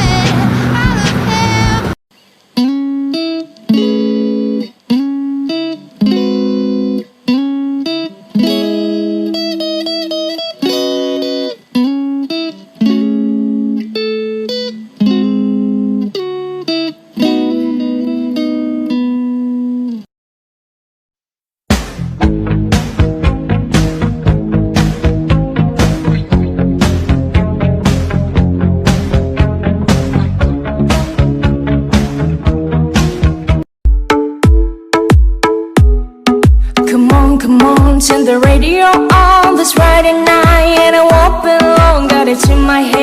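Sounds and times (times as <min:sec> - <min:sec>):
plucked guitar chords: 0:00.0 - 0:02.0, 0:02.6 - 0:20.1, 0:21.7 - 0:43.0.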